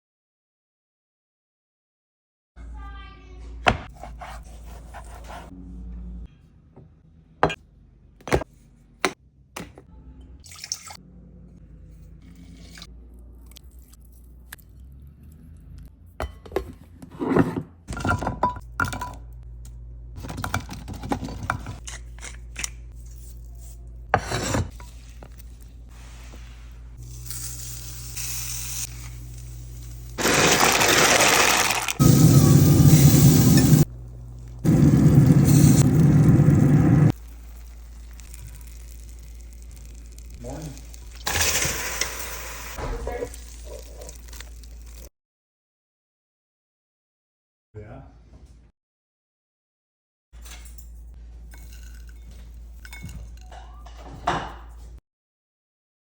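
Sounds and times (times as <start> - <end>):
utensils and dishes clinking: 50.4 - 54.8.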